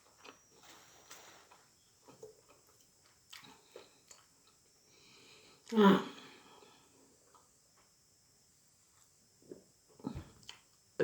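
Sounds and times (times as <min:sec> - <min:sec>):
person chewing: 0:00.0 - 0:04.7.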